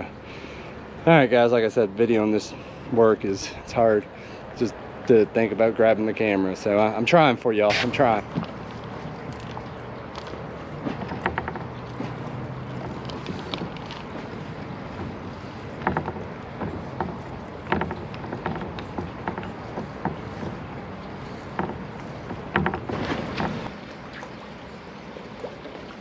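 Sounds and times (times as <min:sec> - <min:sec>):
brush scraping on wood: 0:07.7 - 0:08.2
wood knocking: 0:10.8 - 0:14.3, 0:14.9 - 0:23.7.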